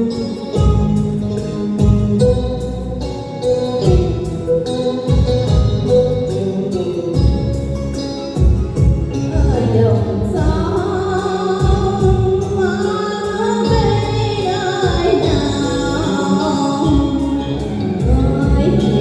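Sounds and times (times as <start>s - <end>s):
band accompaniment with bass beat: 0.0s - 19.0s
drawn-out sung melody: 12.9s - 19.0s.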